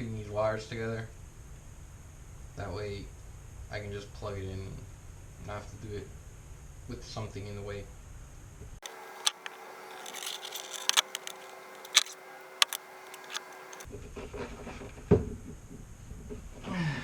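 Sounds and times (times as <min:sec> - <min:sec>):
hand tools clicking on wires: 0:08.8 - 0:13.9.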